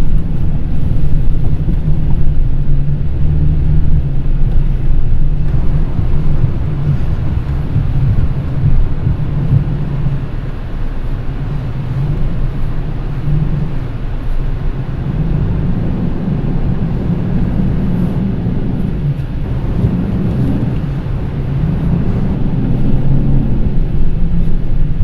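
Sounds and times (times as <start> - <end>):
pickup engine running: 0.0 - 24.0
rumble of tyres and body: 0.0 - 25.0.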